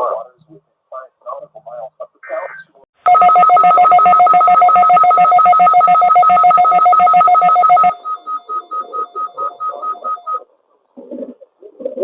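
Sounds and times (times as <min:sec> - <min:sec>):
two-pitch electronic alarm beeping: 0:03.1 - 0:10.4.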